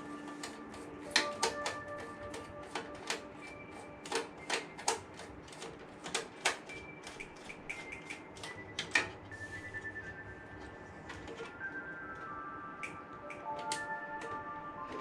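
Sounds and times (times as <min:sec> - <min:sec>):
faint background music: 0:00.0 - 0:15.0
clicks and taps of hard parts: 0:00.3 - 0:09.2.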